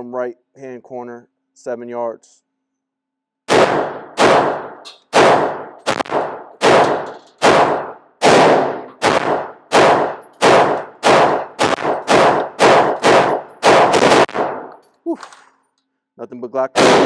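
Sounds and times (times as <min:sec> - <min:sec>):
pistol shots with echo: 0:03.5 - 0:14.8, 0:16.8 - 0:17.0.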